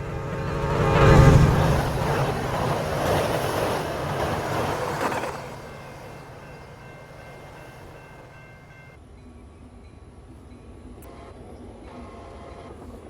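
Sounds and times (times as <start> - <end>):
train wheels rumbling over rails: 0.0 - 9.0.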